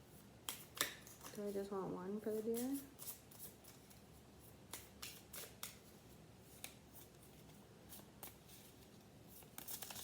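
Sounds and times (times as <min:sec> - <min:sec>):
cards being handled and drawn: 0:00.1 - 0:01.7, 0:02.3 - 0:10.0.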